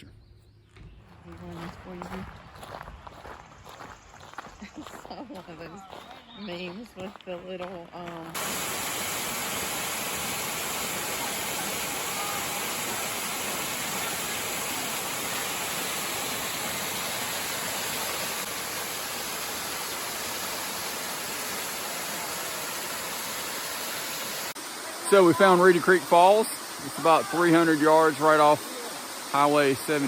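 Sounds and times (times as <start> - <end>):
waterfall rushing: 8.4 - 30.0.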